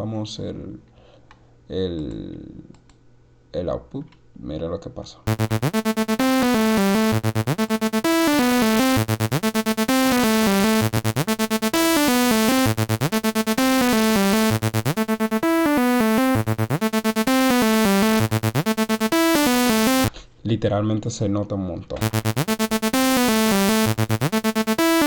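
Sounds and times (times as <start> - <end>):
electronic synth loop: 5.3 - 20.1, 22.0 - 25.0.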